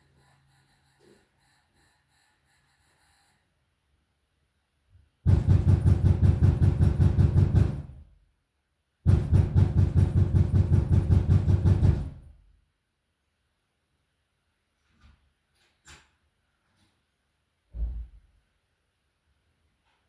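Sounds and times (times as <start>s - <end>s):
loud pounding on a door: 5.2s - 8.1s, 9.0s - 12.4s.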